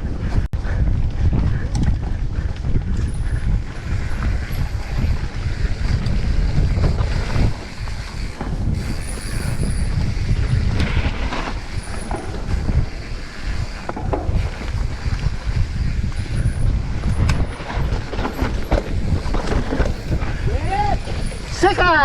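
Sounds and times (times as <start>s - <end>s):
mountain bike rumbling and rattling: 0.0s - 22.0s
wind buffeting microphone: 0.0s - 22.0s
high-pitched squeals: 8.7s - 13.7s.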